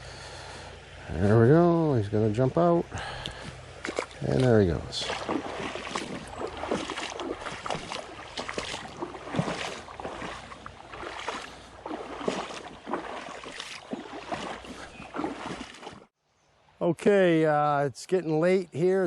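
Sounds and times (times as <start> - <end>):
creek water splashing: 1.6 - 16.2
steady rush of water: 3.2 - 16.1.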